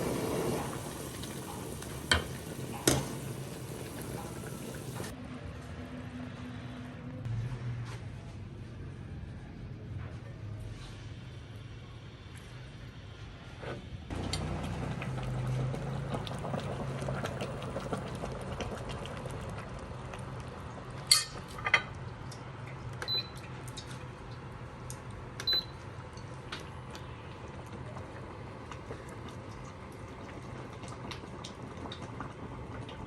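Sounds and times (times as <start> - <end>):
broth bubbling at the boil: 0.0 - 5.2, 14.1 - 33.0.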